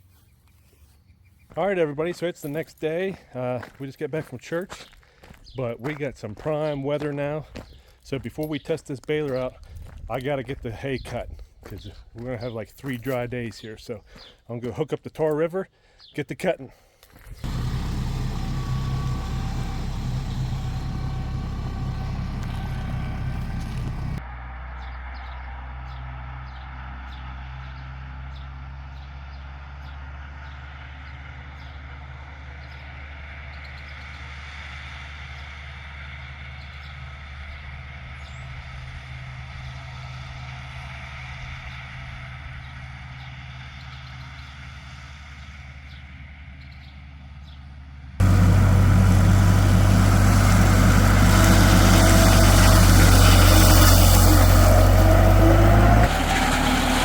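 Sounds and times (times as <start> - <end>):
tractor diesel engine running: 17.2 - 24.2, 34.2 - 57.0.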